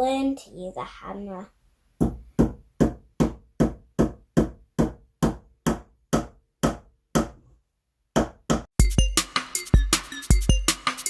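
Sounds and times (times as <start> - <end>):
hammer striking nails into wood: 2.0 - 7.5
background music with a beat: 8.7 - 11.0.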